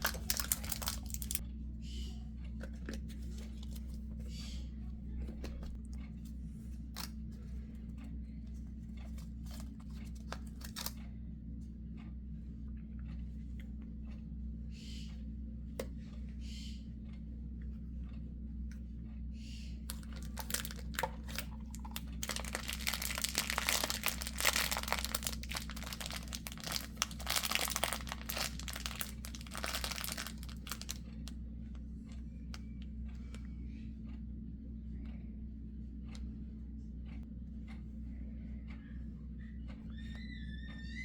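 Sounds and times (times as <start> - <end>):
packaging crinkling and tearing: 0.0 - 1.4, 9.5 - 10.9, 19.9 - 31.0
steady low hum: 0.0 - 41.0.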